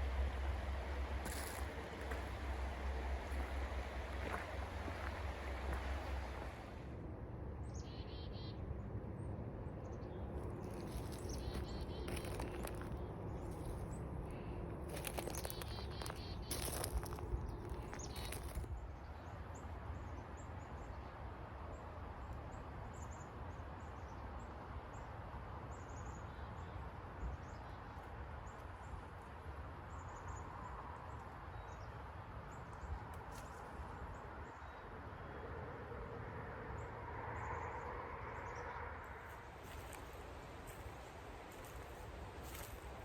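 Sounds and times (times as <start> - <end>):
low outdoor rumble and hiss: 0.0 - 38.2
small birds chirping: 10.5 - 18.7.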